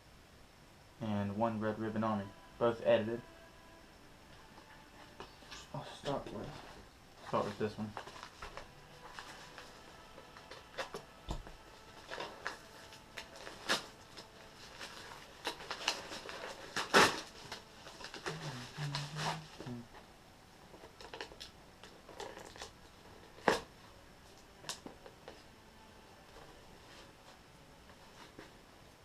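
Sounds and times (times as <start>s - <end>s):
package rustling and scraping: 5.0s - 19.6s, 20.7s - 23.7s.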